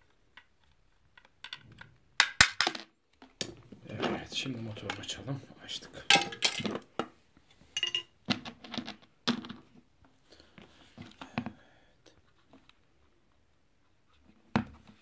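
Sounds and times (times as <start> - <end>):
plastic parts clicking and knocking: 0.0 - 3.7, 6.1 - 7.1, 7.8 - 9.8.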